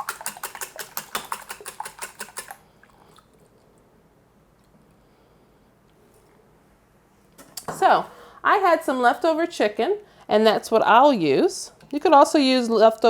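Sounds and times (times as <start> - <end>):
whisk clicking against bowl: 0.0 - 2.6.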